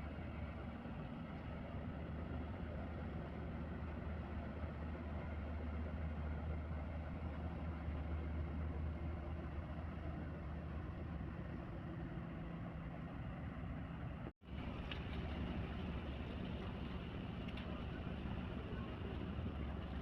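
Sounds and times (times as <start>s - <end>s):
ship engines droning: 0.0s - 20.0s
wind: 0.0s - 20.0s
water noise: 14.4s - 20.0s.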